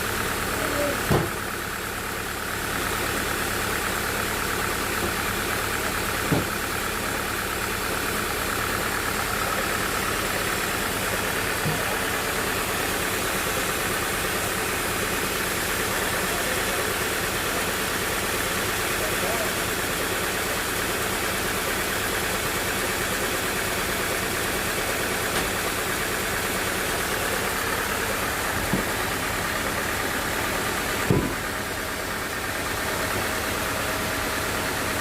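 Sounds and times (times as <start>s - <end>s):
sawmill machinery drone: 0.0s - 35.0s.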